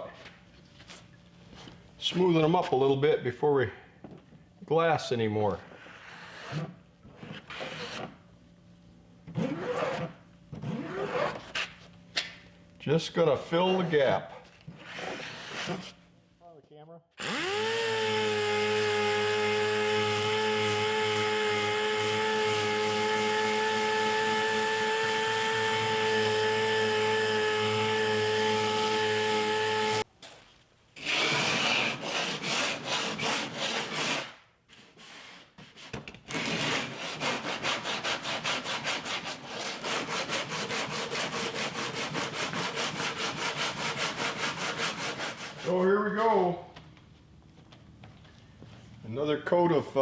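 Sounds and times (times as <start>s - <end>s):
power tool whining: 17.2s - 30.0s
rubbing strokes on fiberglass: 36.7s - 45.8s.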